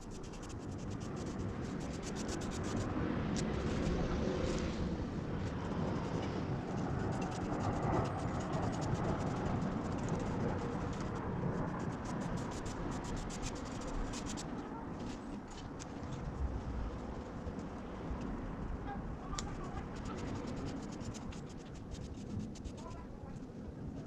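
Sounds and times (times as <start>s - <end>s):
small ticks and clicks: 0.0s - 4.7s, 5.4s - 16.4s, 19.3s - 23.5s
scratchy rubbing of a surface: 0.0s - 4.8s, 5.6s - 15.9s, 19.5s - 23.0s.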